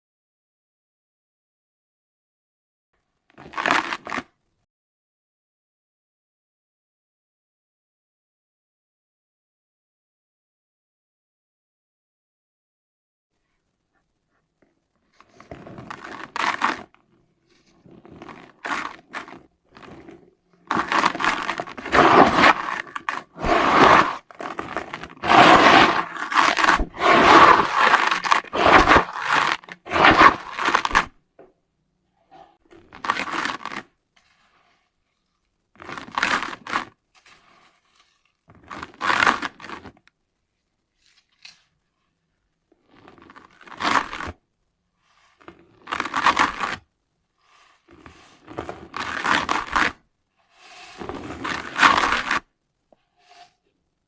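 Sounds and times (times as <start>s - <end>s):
dry dirt crunching: 18.0s - 31.1s.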